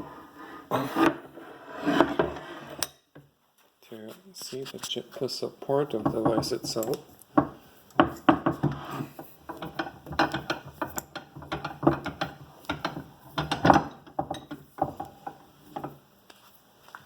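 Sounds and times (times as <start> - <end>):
metal vise clunking: 7.4 - 16.0.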